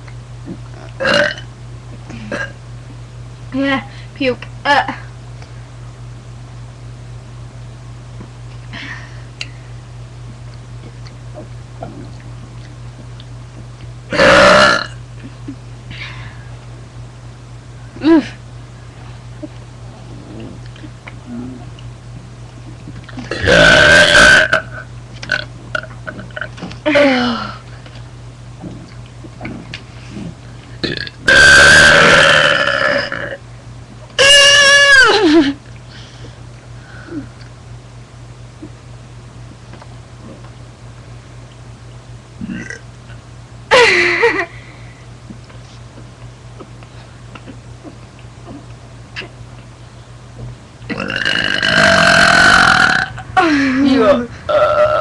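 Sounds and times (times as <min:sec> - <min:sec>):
girl burping: 0:01.0 - 0:01.4, 0:02.2 - 0:02.6, 0:14.1 - 0:15.0, 0:23.2 - 0:25.4, 0:30.8 - 0:33.4, 0:50.9 - 0:55.0.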